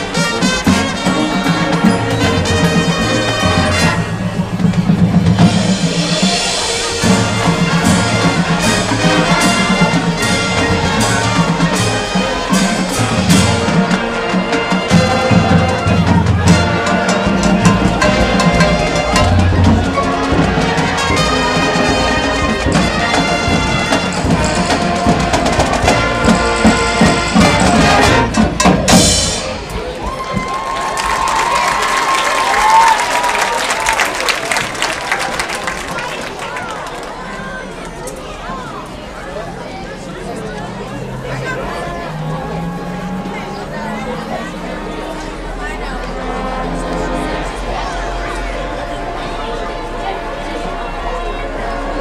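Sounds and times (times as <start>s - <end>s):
brass chords: 0.0s - 30.0s, 38.8s - 52.0s
drumline beat: 0.0s - 37.1s.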